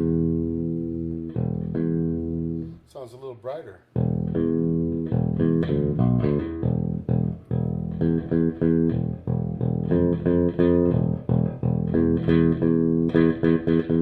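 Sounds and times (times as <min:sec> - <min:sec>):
electric bass guitar plucked: 0:00.0 - 0:02.8, 0:04.0 - 0:14.0.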